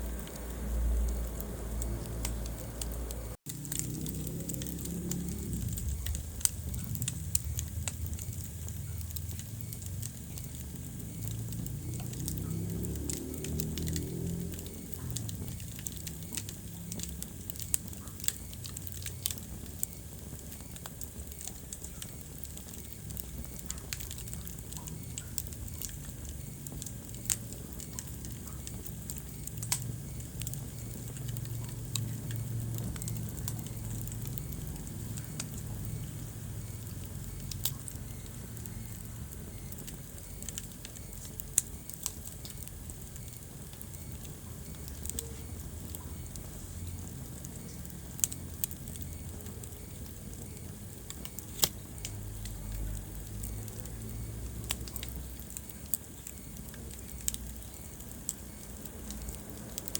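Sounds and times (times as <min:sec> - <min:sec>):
flames rushing: 0:00.0 - 0:59.9
wood fire crackling and popping: 0:00.0 - 0:59.9.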